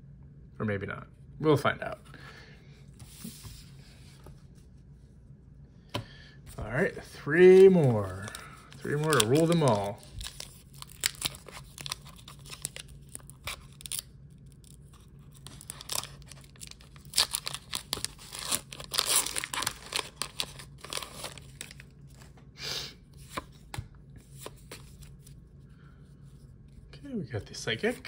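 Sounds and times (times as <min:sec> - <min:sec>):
foil wrapper tearing and crinkling: 0:07.6 - 0:21.9.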